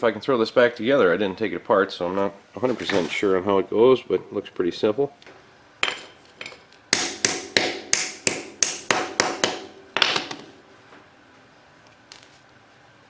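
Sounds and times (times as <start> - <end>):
hammer striking metal: 6.9 - 10.4.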